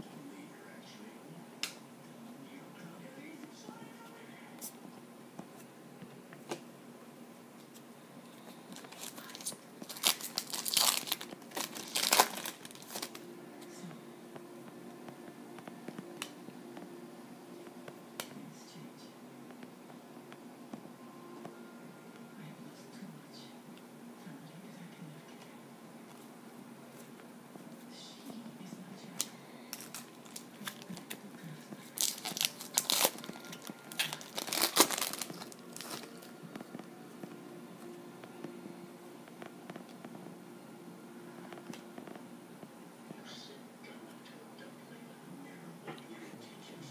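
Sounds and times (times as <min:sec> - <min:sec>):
foil wrapper crinkling and tearing: 0:08.7 - 0:13.2, 0:29.7 - 0:31.2, 0:31.9 - 0:36.3.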